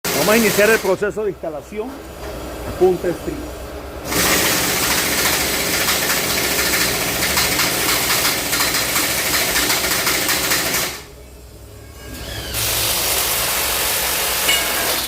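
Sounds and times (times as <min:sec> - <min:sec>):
power tool rattling: 0:04.1 - 0:11.1, 0:12.5 - 0:15.0.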